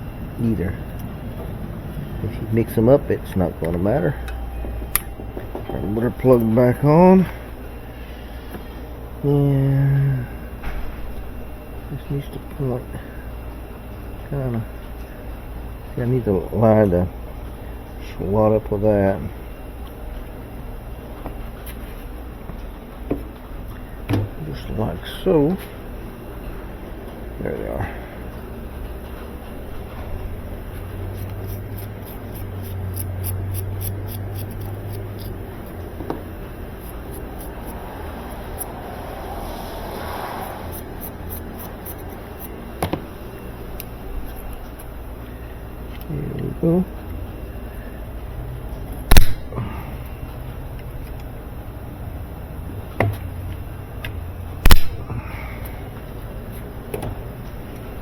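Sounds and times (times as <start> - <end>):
steady low hum: 0.0 - 58.0
loud short snap: 49.1 - 49.5, 54.6 - 55.0.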